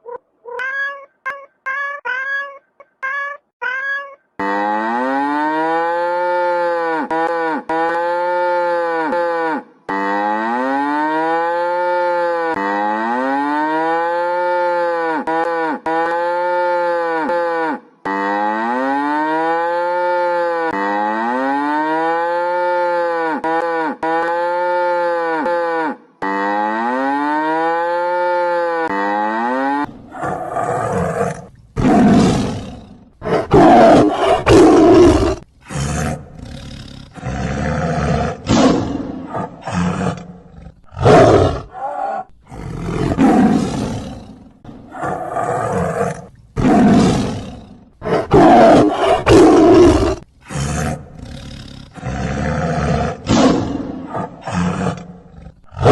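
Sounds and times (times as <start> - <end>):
cow mooing: 4.4 - 44.3
lion roaring and growling: 26.2 - 55.9.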